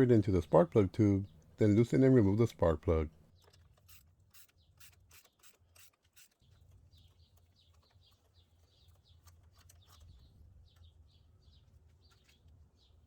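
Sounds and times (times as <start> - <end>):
ratchet clicks: 3.4 - 6.4.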